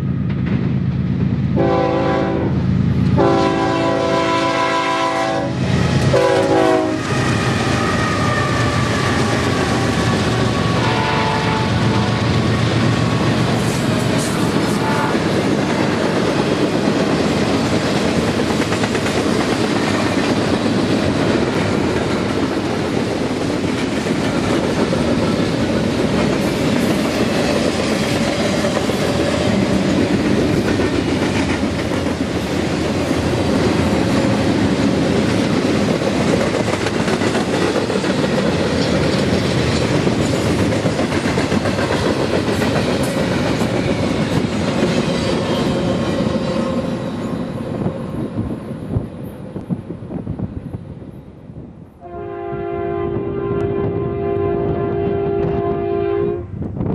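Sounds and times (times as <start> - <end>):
steel wheels on rail: 0.0 - 51.2.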